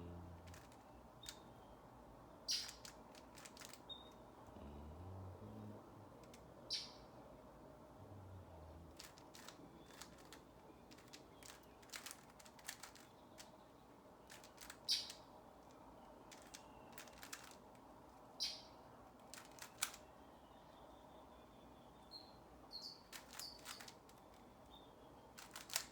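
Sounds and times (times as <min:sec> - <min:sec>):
puzzle cube plastic clicks: 0:00.1 - 0:01.6, 0:02.5 - 0:04.3, 0:08.9 - 0:13.6, 0:14.2 - 0:17.8, 0:19.2 - 0:20.1, 0:23.1 - 0:24.5, 0:25.4 - 0:25.9.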